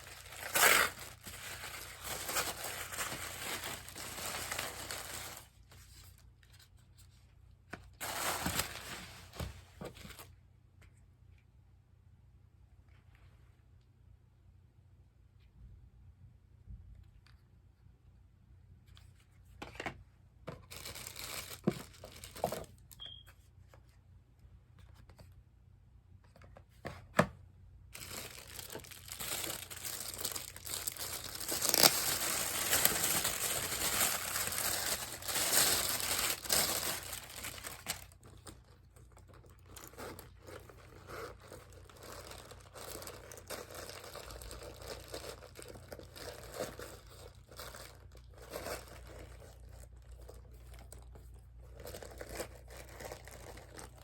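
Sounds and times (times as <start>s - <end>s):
packaging crinkling and tearing: 0.0s - 6.6s, 7.9s - 10.3s, 20.6s - 22.9s, 27.9s - 54.0s.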